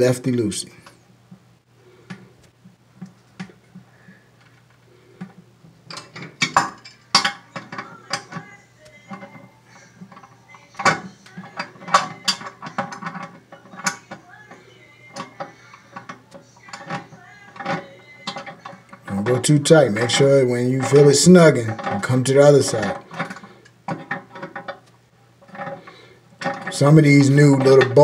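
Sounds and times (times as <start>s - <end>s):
metal tool clinking against nut: 9.1s - 14.2s, 15.1s - 24.8s.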